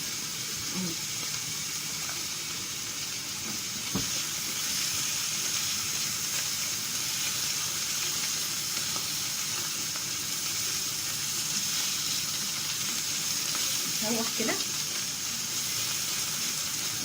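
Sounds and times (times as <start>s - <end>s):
vegetables sizzling in a pan: 0.0s - 17.0s
single knock: 4.0s - 4.2s.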